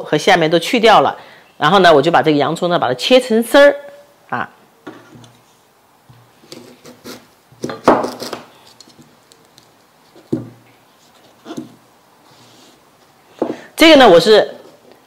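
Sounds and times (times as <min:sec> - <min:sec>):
knife slicing onion: 0:06.4 - 0:09.4.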